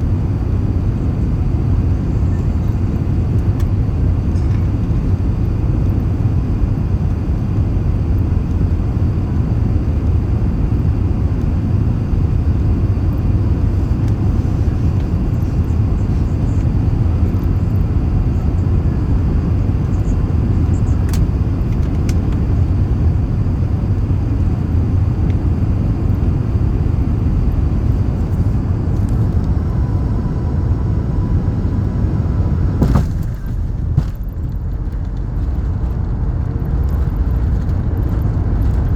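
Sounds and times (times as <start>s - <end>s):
airplane cabin engine rumble: 0.0s - 38.9s
brief knock: 32.8s - 34.2s.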